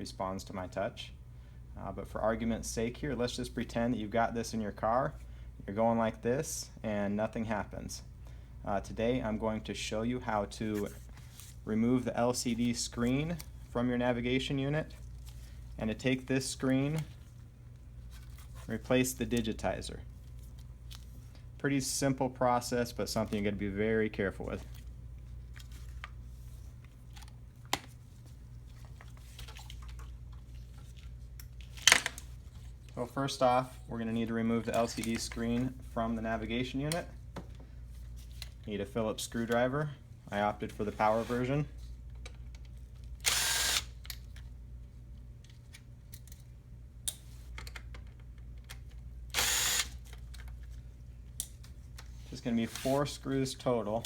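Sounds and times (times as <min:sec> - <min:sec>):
low steady hum: 0:00.0 - 0:54.0
power screwdriver running: 0:43.2 - 0:43.9, 0:49.3 - 0:50.0.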